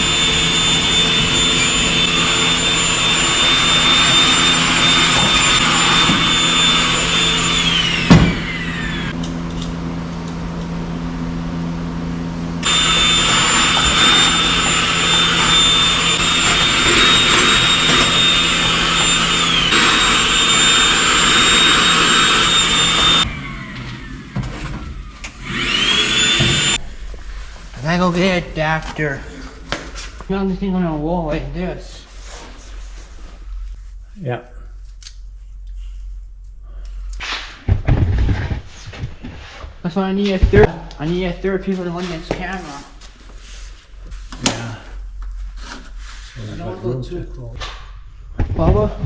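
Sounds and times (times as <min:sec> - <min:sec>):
vacuum cleaner whining: 0:00.0 - 0:26.8.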